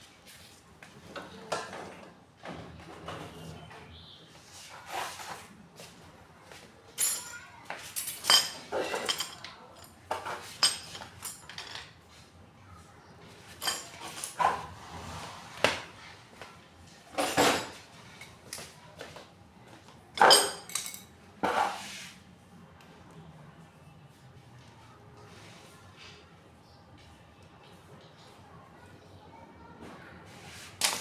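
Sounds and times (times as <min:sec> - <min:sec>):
metal tools clinking: 0:07.0 - 0:11.9, 0:13.6 - 0:14.4, 0:17.2 - 0:17.8, 0:20.2 - 0:21.1.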